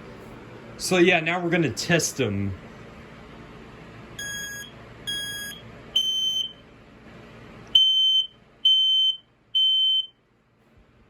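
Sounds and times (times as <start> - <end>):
smoke alarm horn beeping: 4.2 - 6.6, 7.8 - 10.2.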